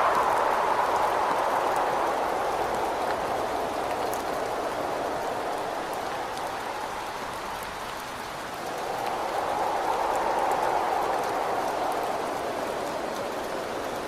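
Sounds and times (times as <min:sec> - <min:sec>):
rain drops ticking: 0:00.0 - 0:14.0
rain hissing on a window: 0:00.0 - 0:14.0
wind against a window: 0:00.0 - 0:14.0.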